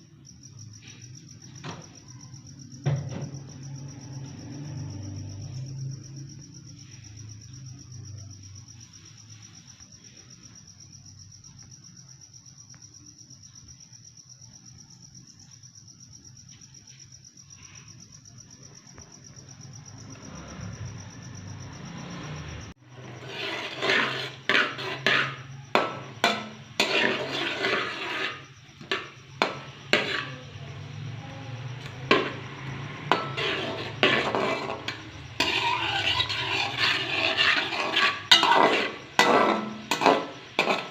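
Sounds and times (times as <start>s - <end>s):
utensil scraping a cooking pot: 22.8s - 30.6s, 31.8s - 40.9s.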